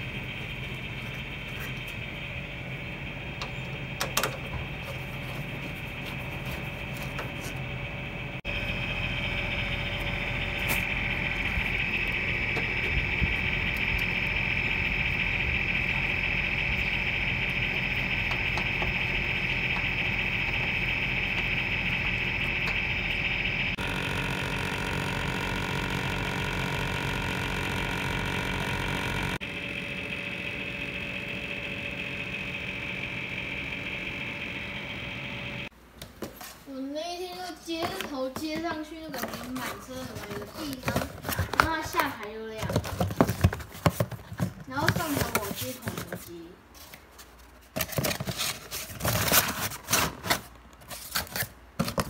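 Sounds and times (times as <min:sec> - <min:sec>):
high even whine: 0:00.0 - 0:35.7.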